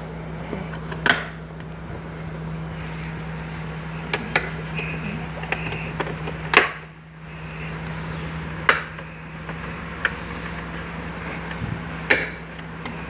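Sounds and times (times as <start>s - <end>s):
steady background hum: 0.0s - 13.0s.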